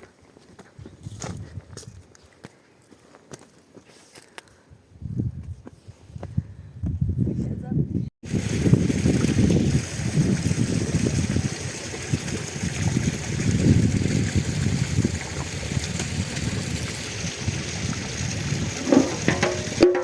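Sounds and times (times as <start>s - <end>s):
stream water running and splashing: 8.2s - 20.0s.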